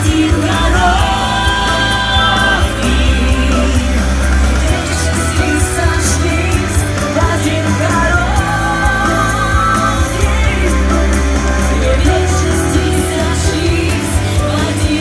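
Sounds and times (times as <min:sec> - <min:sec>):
person singing: 0:00.0 - 0:15.0
pop song with band: 0:00.0 - 0:15.0.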